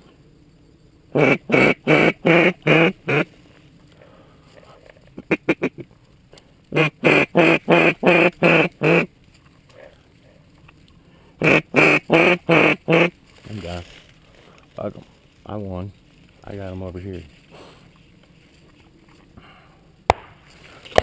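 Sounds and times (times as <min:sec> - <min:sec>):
duck call quacks: 0:01.1 - 0:03.3, 0:05.2 - 0:05.8, 0:06.7 - 0:09.1, 0:11.4 - 0:13.1
duck call feed chatter: 0:01.2 - 0:03.3, 0:06.7 - 0:09.1, 0:11.4 - 0:13.1.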